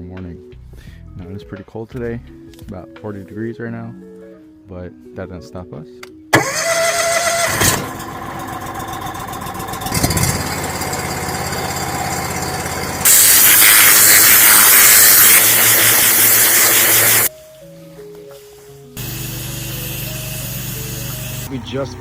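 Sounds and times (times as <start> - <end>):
pressure washer engine running: 6.4 - 17.3, 19.0 - 22.0
high-pressure water spraying: 12.2 - 17.3, 19.0 - 21.5.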